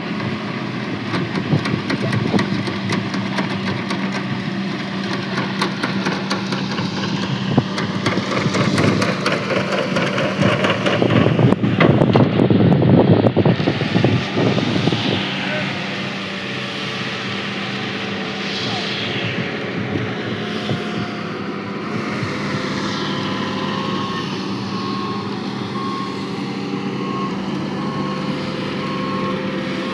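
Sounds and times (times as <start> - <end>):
diesel engine humming: 0.0 - 29.9
rough noise: 0.8 - 29.9
small clicks and rattles: 1.1 - 11.9
reversing alarm beeping: 1.1 - 12.2, 21.9 - 29.9.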